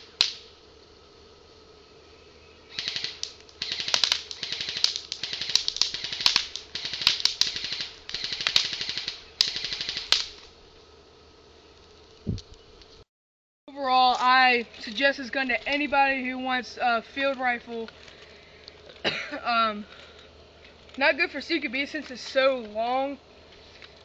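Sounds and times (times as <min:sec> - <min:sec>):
airsoft rifle firing bursts: 0:02.7 - 0:10.4.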